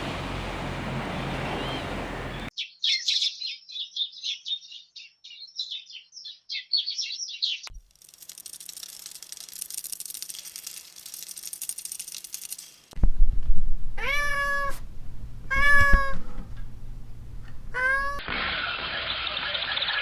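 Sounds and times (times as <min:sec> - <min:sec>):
cat meowing: 0:14.0 - 0:14.8, 0:15.5 - 0:16.2, 0:17.7 - 0:18.2.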